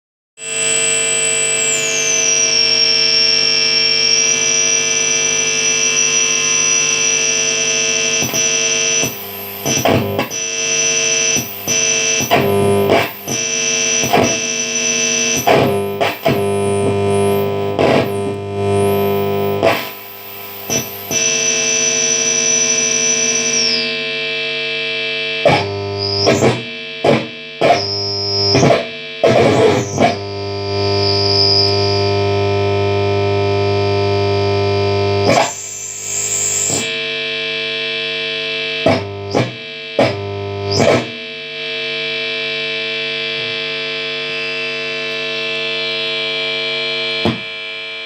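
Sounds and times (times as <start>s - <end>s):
high-pitched feedback whistle: 0.4s - 24.0s, 30.9s - 32.1s, 35.3s - 37.0s
guitar amplifier buzzing drone: 0.4s - 48.0s.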